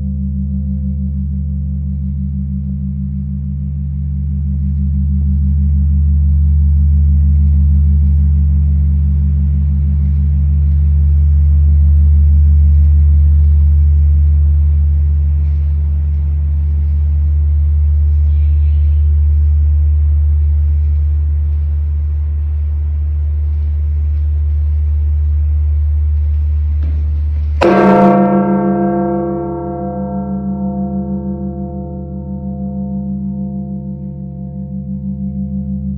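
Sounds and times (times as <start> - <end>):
large bell tolling: 27.6 - 35.9.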